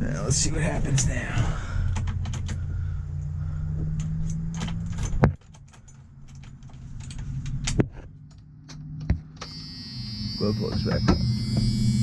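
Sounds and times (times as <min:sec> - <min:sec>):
low electrical hum: 0:00.0 - 0:12.0
ignition keys jangling: 0:01.8 - 0:02.6, 0:04.0 - 0:08.8.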